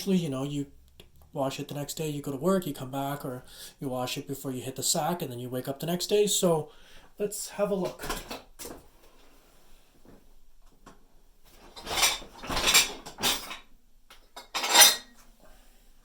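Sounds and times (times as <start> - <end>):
dishes and cutlery rattling: 11.6 - 13.7, 14.3 - 15.2.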